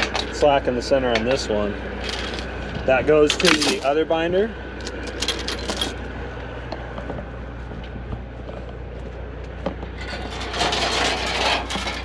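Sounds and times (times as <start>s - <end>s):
truck engine idling: 0.0s - 12.0s
metallic rattle: 1.2s - 2.6s, 4.8s - 6.0s, 9.9s - 12.0s
chain clinking: 1.3s - 2.5s, 3.3s - 4.0s, 4.8s - 6.0s, 10.0s - 12.0s.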